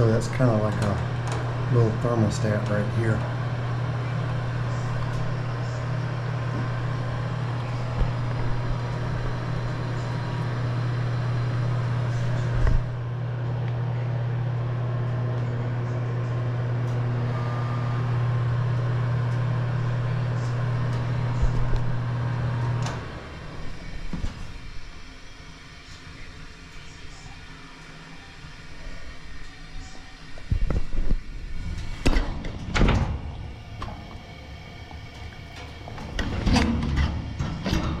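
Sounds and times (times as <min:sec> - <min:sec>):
low machine hum: 0:00.0 - 0:38.0.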